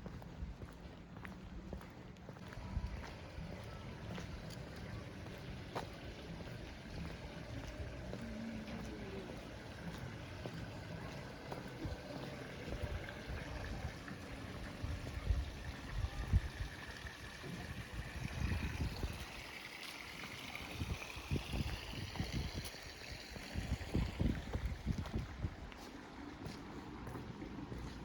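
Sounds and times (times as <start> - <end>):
wind buffeting microphone: 5.6 - 19.7, 20.3 - 25.9.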